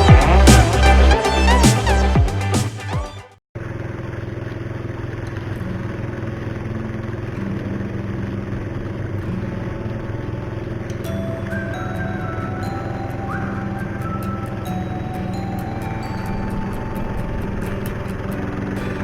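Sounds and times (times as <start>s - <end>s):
music: 0.0s - 3.4s, 10.5s - 19.0s
boat motor droning: 3.6s - 19.0s.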